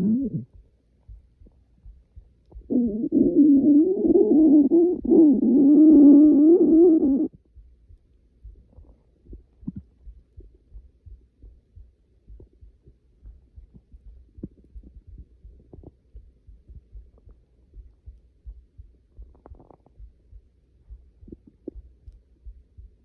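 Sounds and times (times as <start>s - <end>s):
stomach growling: 0.0s - 0.6s, 2.5s - 7.4s, 8.7s - 10.0s, 19.2s - 20.1s
stomach gurgles and pops: 0.0s - 0.6s, 1.4s - 7.5s, 8.6s - 10.5s, 12.3s - 18.0s, 19.1s - 20.2s, 20.9s - 22.3s.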